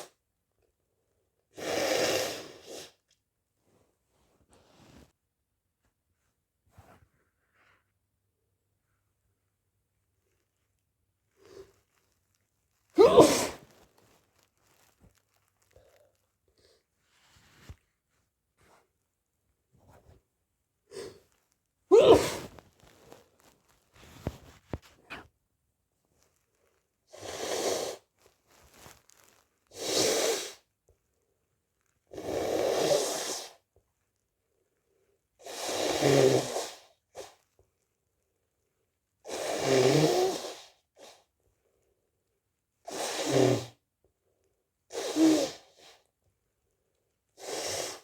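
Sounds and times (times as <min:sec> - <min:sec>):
person sneezing: 0:13.0 - 0:13.6, 0:21.9 - 0:22.6.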